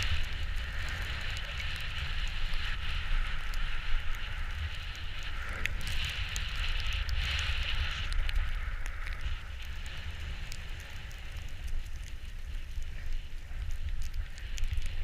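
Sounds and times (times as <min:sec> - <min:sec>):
hiss of sliding on snow: 0:00.0 - 0:15.0
wind buffeting microphone: 0:00.0 - 0:15.0.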